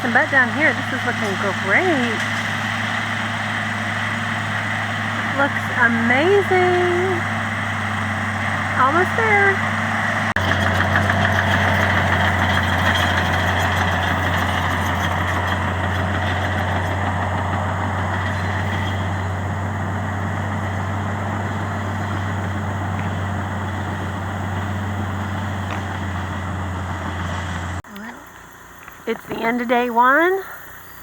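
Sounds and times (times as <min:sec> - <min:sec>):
bulldozer diesel engine humming: 0:00.0 - 0:31.0.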